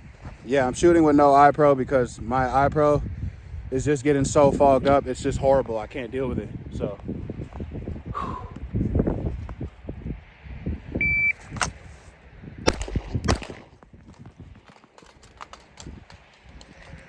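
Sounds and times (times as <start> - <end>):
rifle shots: 12.7 - 13.8.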